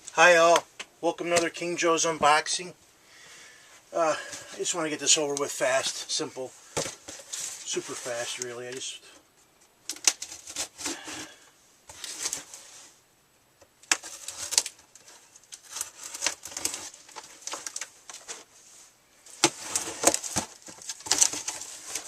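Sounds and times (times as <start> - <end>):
packaging rustling and crinkling: 9.9 - 12.8, 13.8 - 22.0.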